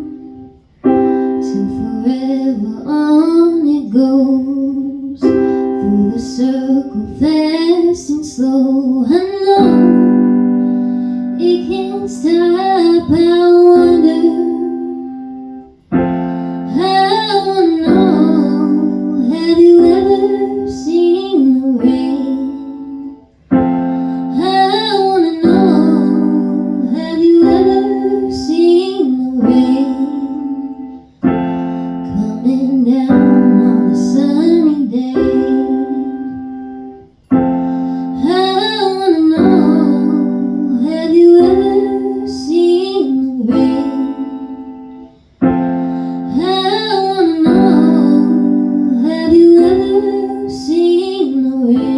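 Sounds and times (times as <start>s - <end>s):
person singing: 0.0s - 51.9s
piano chords: 0.0s - 51.9s.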